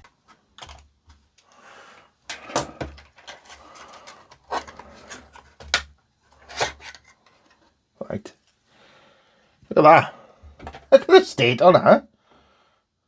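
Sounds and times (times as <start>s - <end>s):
plastic clicks and knocks: 0.2s - 1.2s
scraping and rubbing: 2.4s - 7.8s.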